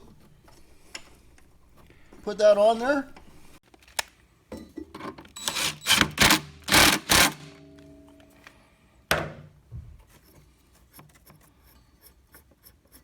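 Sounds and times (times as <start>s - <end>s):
power tool driving bolt: 5.3s - 7.6s.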